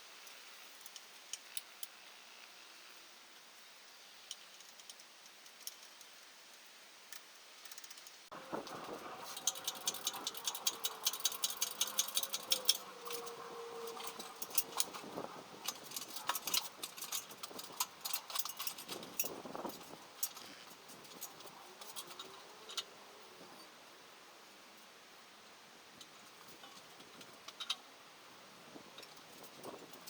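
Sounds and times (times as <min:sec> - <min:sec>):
faint wavering hum: 0:08.3 - 0:23.8
metallic clicks of hand tools: 0:09.2 - 0:22.9.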